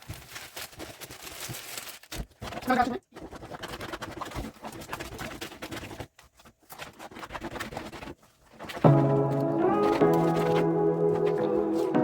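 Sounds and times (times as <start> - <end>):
scratching and clattering handling: 0.0 - 12.0
music: 8.8 - 12.0.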